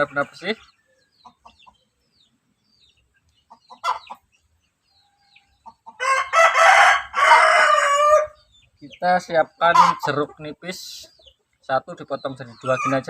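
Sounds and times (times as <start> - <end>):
chickens clucking softly: 0.0 - 6.4, 7.2 - 13.0
rooster crowing: 6.0 - 8.4.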